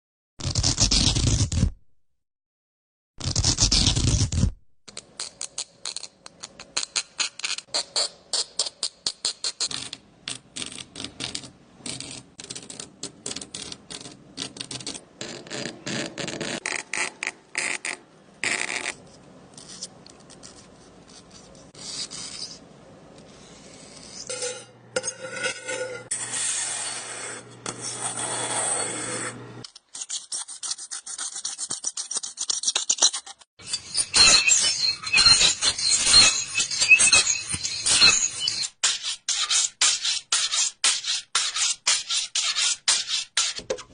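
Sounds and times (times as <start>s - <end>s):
scraping and rasping strokes: 10.6s - 43.9s.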